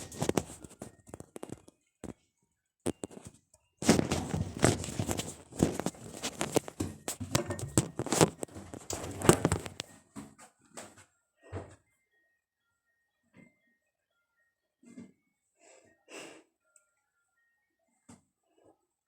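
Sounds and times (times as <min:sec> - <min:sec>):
irregular knocks and thumps: 0:02.9 - 0:10.4.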